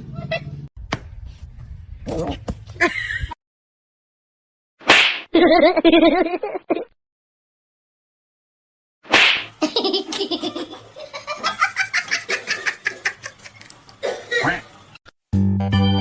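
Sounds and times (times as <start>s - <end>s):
person laughing hard: 2.8s - 3.4s.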